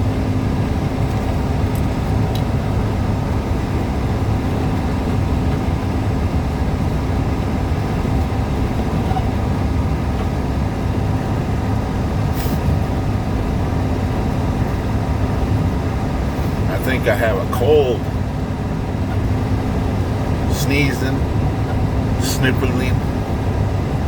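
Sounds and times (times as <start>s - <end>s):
road noise: 0.0s - 24.0s
truck engine drone: 0.0s - 24.0s.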